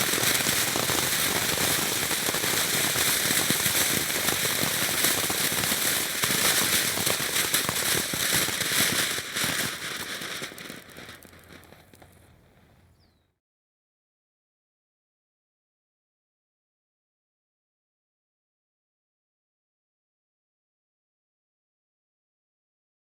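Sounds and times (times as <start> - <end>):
firework fountain crackling hiss: 0.0 - 12.9.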